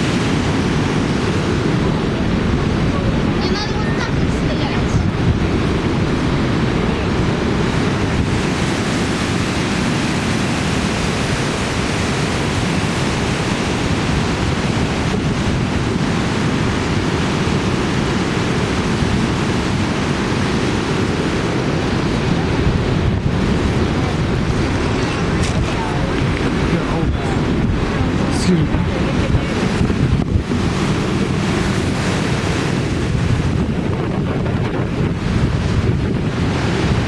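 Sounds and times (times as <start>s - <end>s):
waterfall rushing: 0.0s - 15.0s, 16.3s - 29.9s
wind buffeting microphone: 0.0s - 37.0s.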